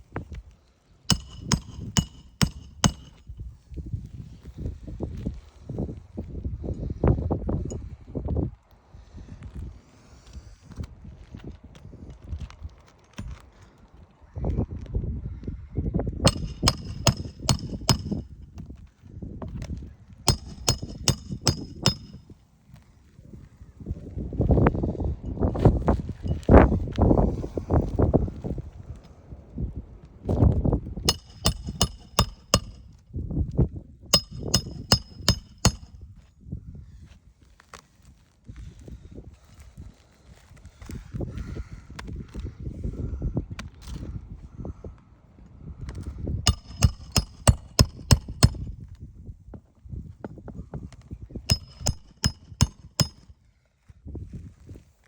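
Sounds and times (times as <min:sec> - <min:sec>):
hammer striking roofing nails: 0:01.1 - 0:03.3, 0:16.3 - 0:18.4, 0:20.3 - 0:22.2, 0:31.1 - 0:32.8, 0:34.2 - 0:35.9, 0:46.5 - 0:48.6, 0:51.5 - 0:53.3
metal tool tapping on metal: 0:01.1 - 0:03.3, 0:16.3 - 0:18.2, 0:20.3 - 0:22.2, 0:31.1 - 0:32.8, 0:34.2 - 0:35.9, 0:46.5 - 0:48.6, 0:51.5 - 0:53.3.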